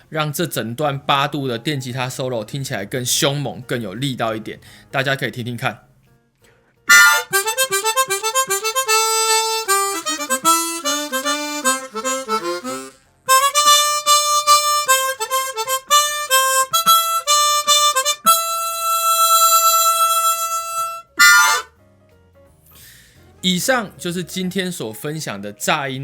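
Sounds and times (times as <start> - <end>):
harmonica playing a fast lead: 6.9 - 21.7.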